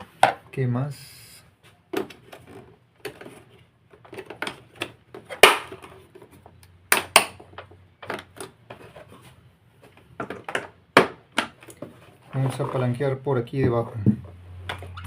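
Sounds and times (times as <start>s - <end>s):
plastic clicks and knocks: 1.9s - 8.8s, 9.9s - 11.9s.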